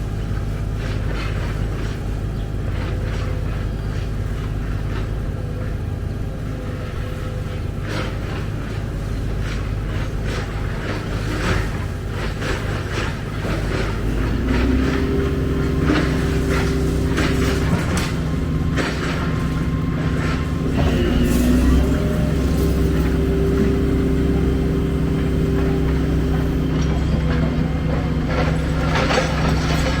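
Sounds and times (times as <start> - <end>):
excavator diesel engine: 0.0 - 30.0
machine clanks and knocks: 9.2 - 30.0.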